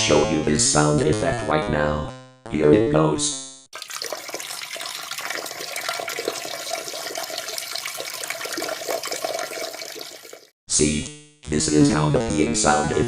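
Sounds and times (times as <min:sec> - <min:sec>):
urine splashing into toilet water: 0:03.8 - 0:10.5.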